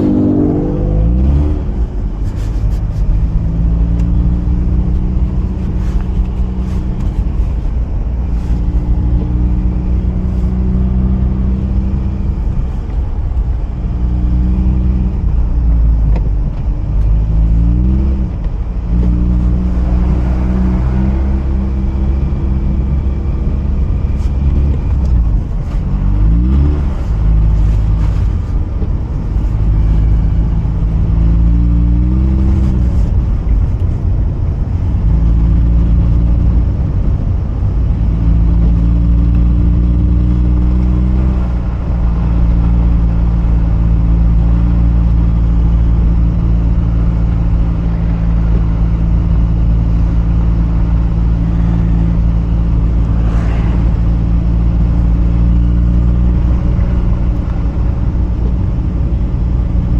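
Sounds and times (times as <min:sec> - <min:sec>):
rotary engine accelerating: 0:00.0 - 0:07.5, 0:17.0 - 0:34.1, 0:37.5 - 0:59.9.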